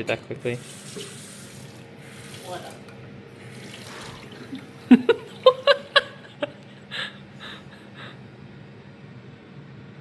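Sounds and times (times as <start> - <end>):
person laughing: 4.8 - 8.1.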